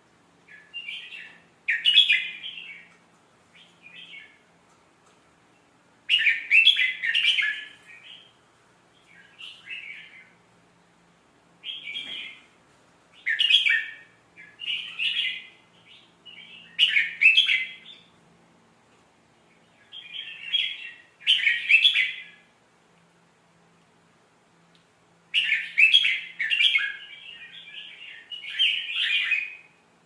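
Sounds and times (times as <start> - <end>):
bird warbling song: 13.2 - 18.2, 25.3 - 29.7.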